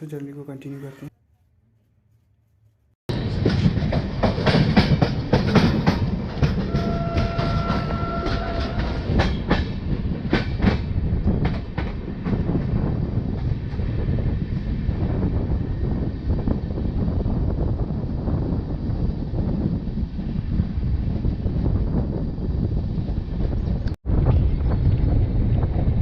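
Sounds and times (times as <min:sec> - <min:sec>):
train running noise: 0:03.1 - 0:26.0
train wheels clattering over rail joints: 0:03.2 - 0:14.0
train horn: 0:06.6 - 0:09.3.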